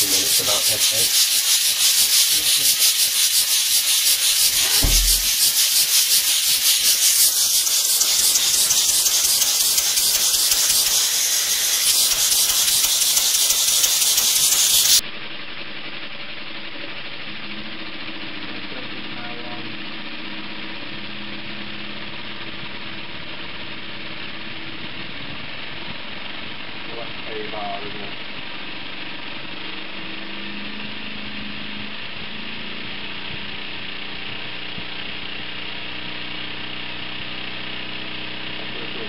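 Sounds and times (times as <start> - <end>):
small steam engine hissing: 0.0 - 15.0.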